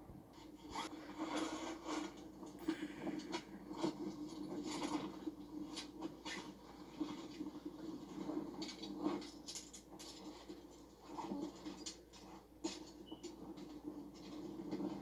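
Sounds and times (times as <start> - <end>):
camping gear rustling and scraping: 0.2 - 15.0
steady low hum: 2.6 - 4.8.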